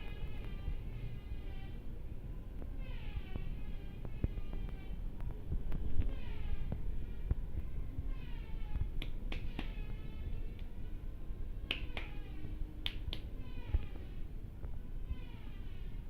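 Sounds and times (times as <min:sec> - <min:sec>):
neck cracking snaps: 0:09.0 - 0:09.8, 0:11.7 - 0:12.2, 0:12.8 - 0:13.3.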